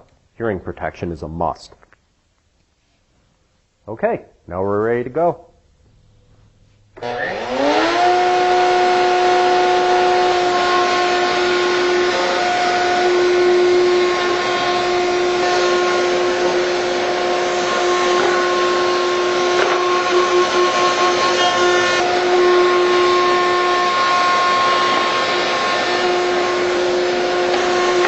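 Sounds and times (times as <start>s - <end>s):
dust extraction running: 7.0s - 28.0s
router high whine: 7.0s - 28.0s.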